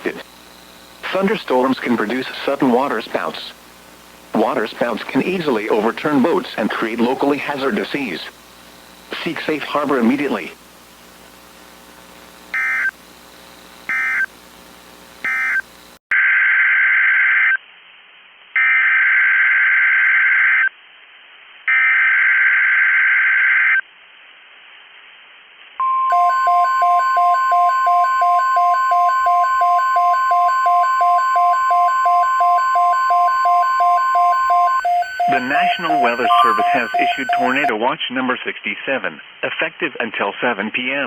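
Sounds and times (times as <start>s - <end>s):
steady attention tone: 25.8s - 37.7s
rapid pulsing beep: 25.9s - 37.7s
data burst screeches: 34.8s - 37.7s.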